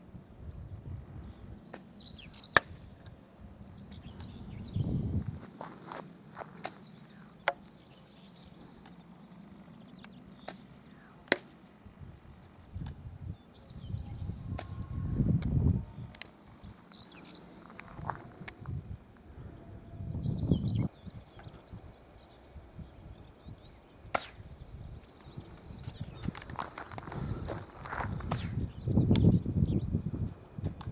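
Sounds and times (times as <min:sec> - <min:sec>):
insects trilling: 0:00.0 - 0:30.7
wind on microphone: 0:03.6 - 0:05.5, 0:11.9 - 0:16.8, 0:17.9 - 0:30.9.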